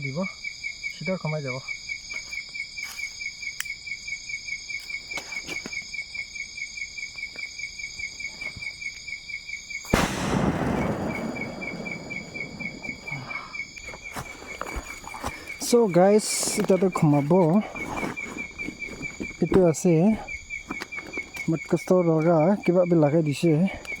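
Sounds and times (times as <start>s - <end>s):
insects chirring: 0.0s - 24.0s
rapid pulsing insect chirp: 0.0s - 24.0s
firecracker bang: 9.9s - 14.3s.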